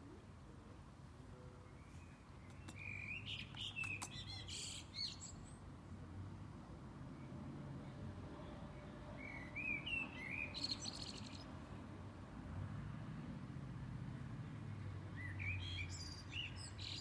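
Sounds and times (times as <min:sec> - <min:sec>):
bird chirping: 0:01.7 - 0:05.6.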